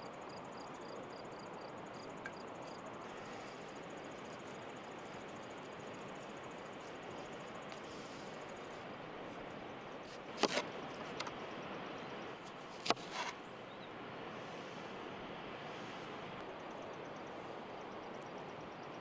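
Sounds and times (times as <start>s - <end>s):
outdoor background noise: 0.0s - 19.0s
scraping rustle: 10.1s - 11.3s, 12.7s - 13.4s.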